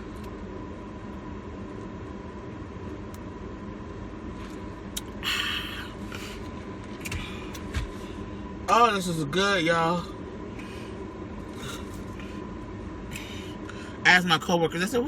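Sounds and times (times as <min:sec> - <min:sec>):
low background hum: 0:00.0 - 0:15.0.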